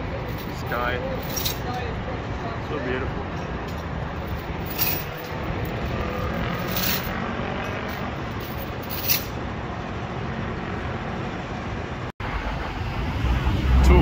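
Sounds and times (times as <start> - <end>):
distant city traffic rumble: 0.0 - 14.0.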